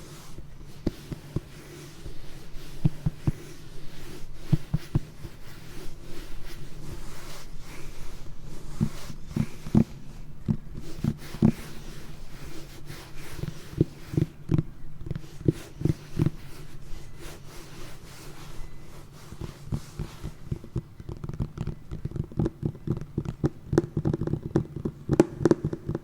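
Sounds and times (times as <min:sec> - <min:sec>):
faint hiss: 0:00.0 - 0:26.0
soft dull tapping: 0:08.2 - 0:17.2, 0:18.6 - 0:26.0.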